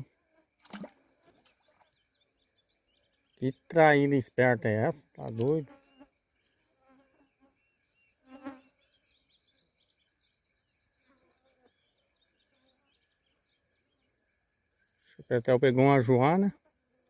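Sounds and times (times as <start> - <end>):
insect chorus trilling: 0.0 - 17.0.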